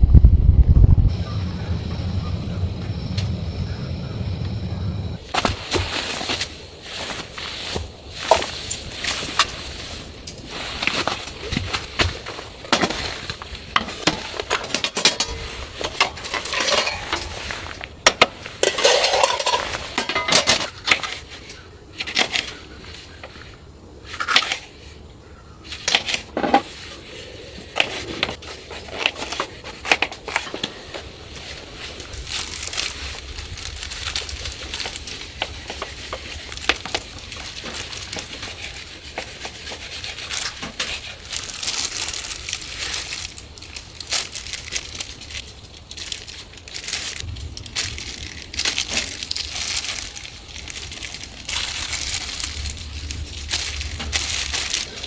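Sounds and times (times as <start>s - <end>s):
cookware clinking and knocking: 16.2s - 17.4s, 18.6s - 20.6s.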